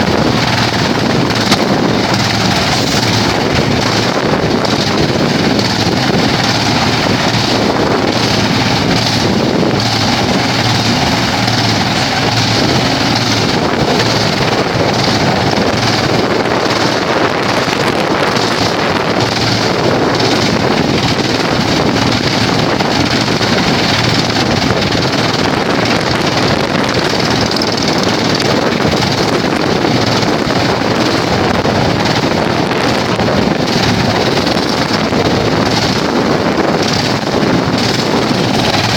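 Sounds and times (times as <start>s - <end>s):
wood chipper running: 0.0s - 38.9s.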